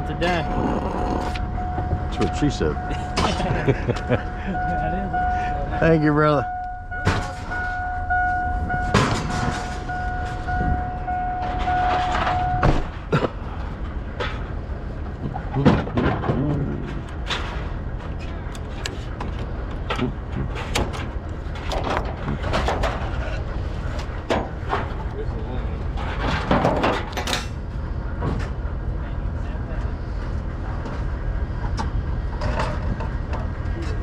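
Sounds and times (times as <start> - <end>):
electronic warning tone: 0.0 - 12.8
vehicle engine running: 0.0 - 15.7
knocks and clunks: 7.0 - 13.3, 15.2 - 23.3.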